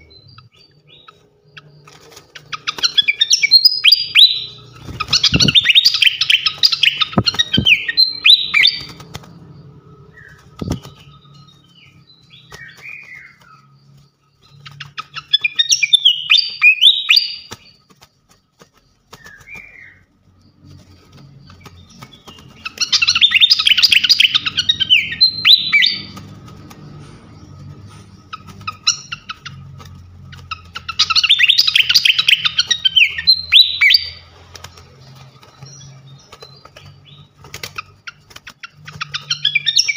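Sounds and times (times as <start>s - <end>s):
short bird calls: 0.0s - 9.3s
bird chirping rapidly: 0.0s - 39.9s.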